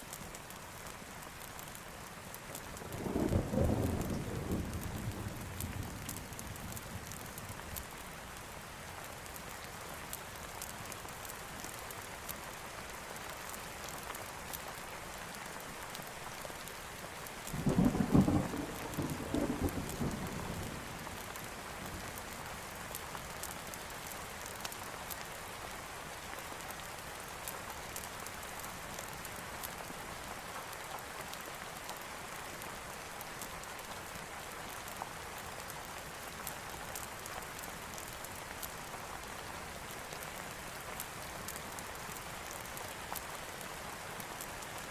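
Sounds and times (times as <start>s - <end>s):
steady rain: 0.0s - 44.9s
thunder rumbling: 17.6s - 20.8s.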